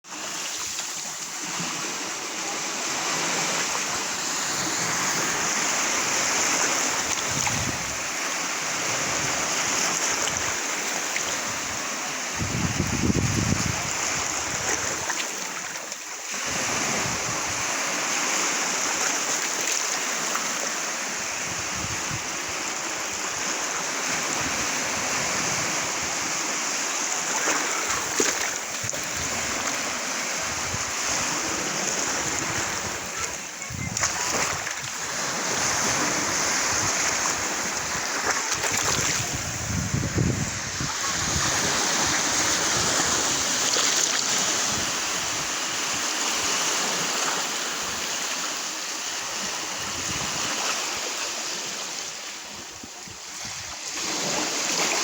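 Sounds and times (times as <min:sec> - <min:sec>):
ocean waves splashing: 0:00.0 - 0:55.0.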